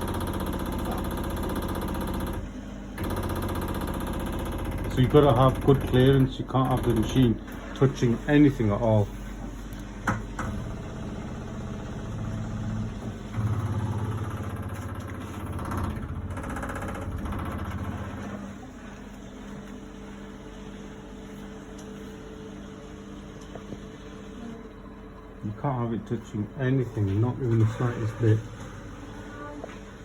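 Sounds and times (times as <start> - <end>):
washing machine drum spinning: 0.0 - 19.0.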